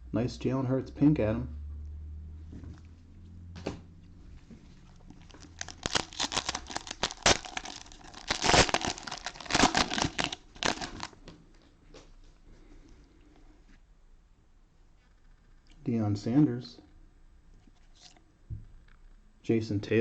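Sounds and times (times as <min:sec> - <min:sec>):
plastic wrapper crinkling and tearing: 0:04.8 - 0:11.2.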